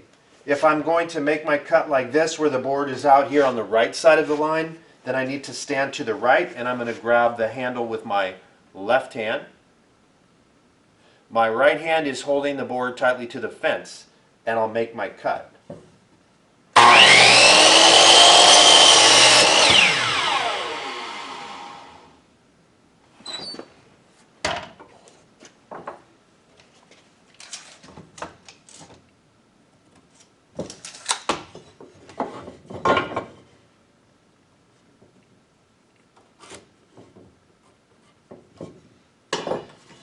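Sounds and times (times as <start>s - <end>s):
miter saw cutting board: 16.8s - 22.2s
saw blade spinning down: 16.8s - 22.2s.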